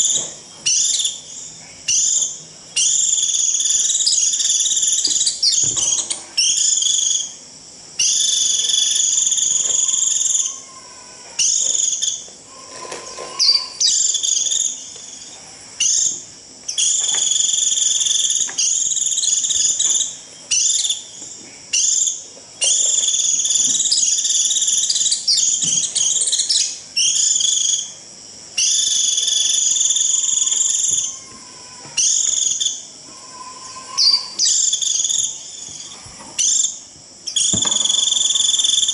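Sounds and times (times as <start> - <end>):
bird shrill buzzy call: 12.5 - 14.5, 30.5 - 35.3.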